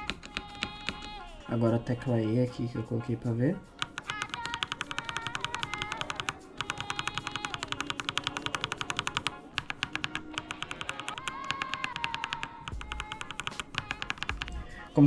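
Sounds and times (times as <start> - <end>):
mechanical keyboard keys clacking: 3.8 - 14.5.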